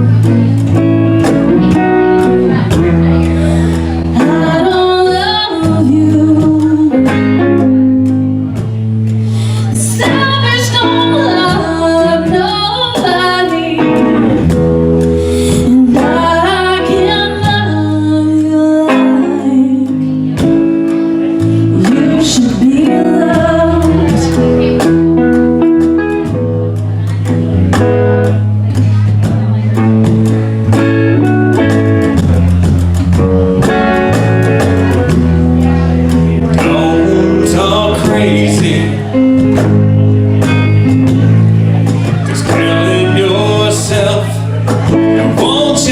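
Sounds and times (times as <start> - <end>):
guitar chords: 0.0 - 45.9
live country-rock band: 0.0 - 45.9
woman singing: 2.5 - 7.6, 9.5 - 14.4, 15.3 - 20.4, 21.6 - 24.8.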